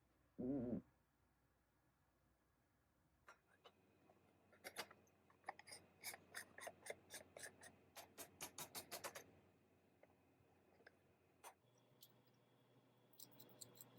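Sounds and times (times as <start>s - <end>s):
light sharp clicks and taps: 8.0s - 9.3s.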